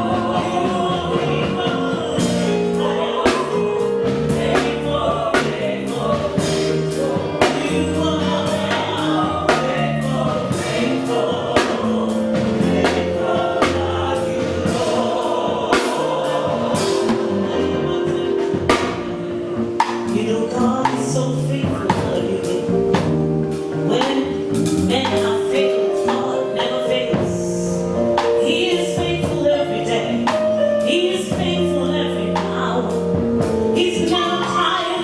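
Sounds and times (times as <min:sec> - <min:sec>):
choir singing: 0:00.0 - 0:22.8
band with drum kit beat: 0:00.0 - 0:35.0.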